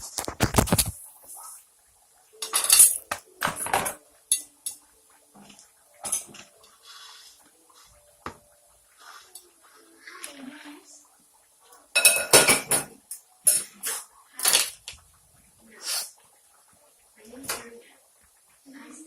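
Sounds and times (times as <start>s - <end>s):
dishes and cutlery clattering: 2.4s - 6.8s, 11.9s - 15.0s.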